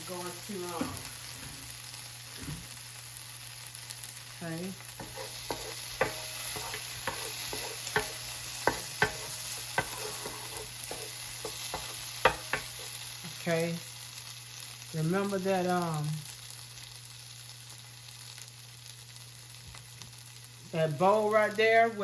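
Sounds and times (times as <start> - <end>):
meat sizzling in hot oil: 0.0 - 22.0
utensil clicking against pot: 5.0 - 12.9.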